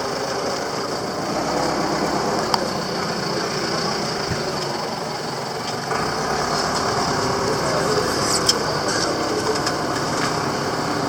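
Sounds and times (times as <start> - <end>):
vehicle engines running: 0.0 - 11.0.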